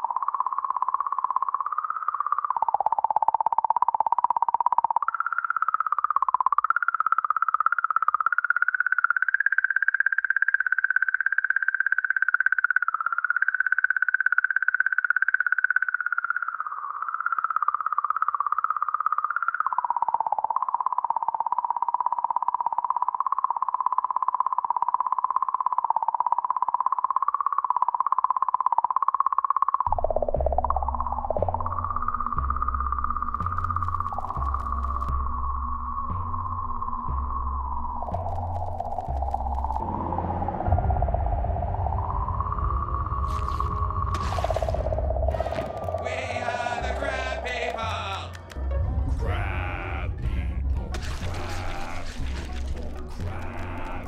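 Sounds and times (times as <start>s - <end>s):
deep pulsing bass: 29.9s - 54.0s.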